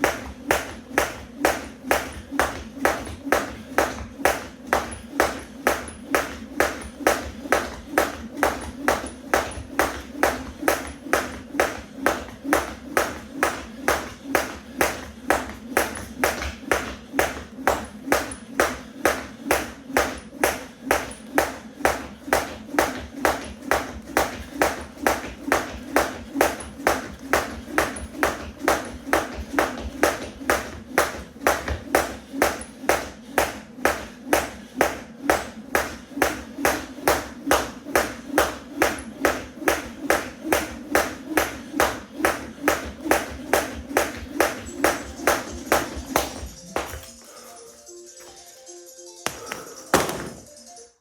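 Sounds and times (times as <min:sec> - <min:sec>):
jump rope slapping the floor: 0:00.0 - 0:47.3, 0:49.2 - 0:50.5.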